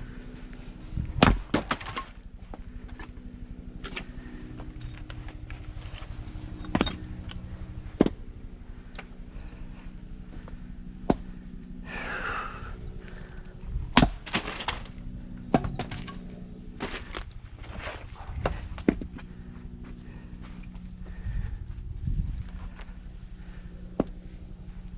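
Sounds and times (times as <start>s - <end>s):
axe splitting firewood: 1.0s - 3.2s, 3.8s - 8.2s, 13.8s - 19.1s
wood cracking: 1.1s - 3.2s, 14.0s - 19.1s.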